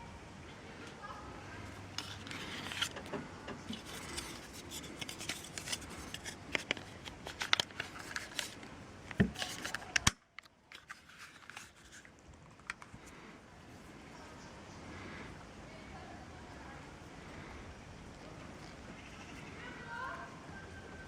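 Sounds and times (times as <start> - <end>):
small metal clicks and scrapes: 1.9 - 12.9.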